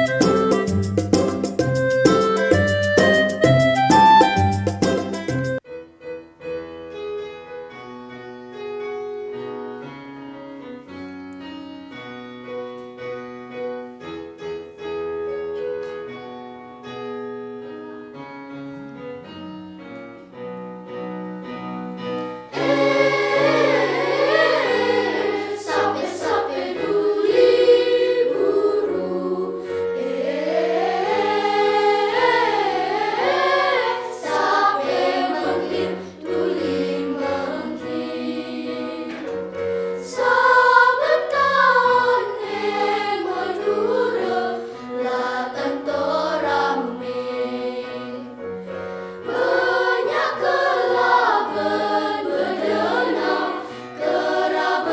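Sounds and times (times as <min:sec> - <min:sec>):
electronic keyboard playing chords: 0:00.0 - 0:05.6
children's choir singing: 0:22.2 - 0:54.9.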